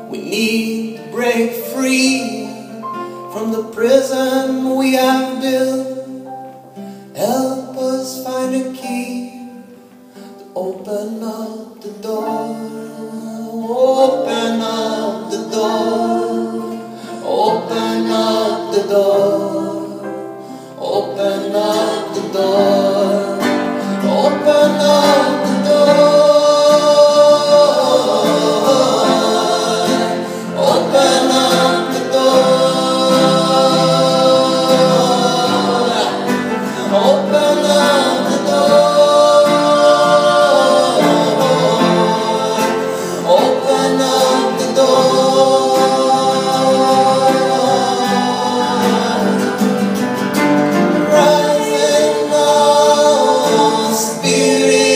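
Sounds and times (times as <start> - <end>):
group singing in harmony: 12.0 - 54.9.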